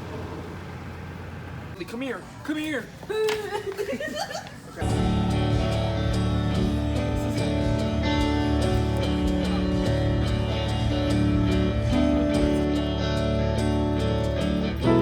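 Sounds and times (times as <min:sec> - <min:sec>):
guitar background music: 0:04.8 - 0:15.0.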